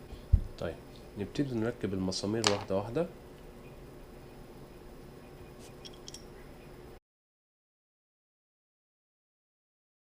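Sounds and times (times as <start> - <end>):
low background hum: 0.0 - 7.0.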